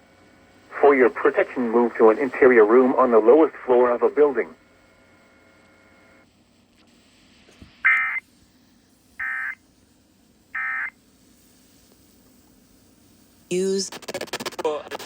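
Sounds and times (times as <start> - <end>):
digital data tone squawks: 7.8 - 8.2, 9.2 - 9.6, 10.6 - 11.0.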